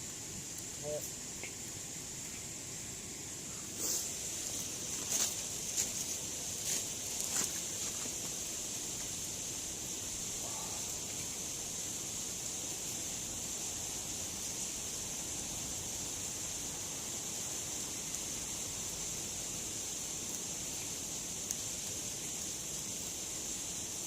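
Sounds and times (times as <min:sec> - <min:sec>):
campfire burning with pops: 0:00.0 - 0:24.0.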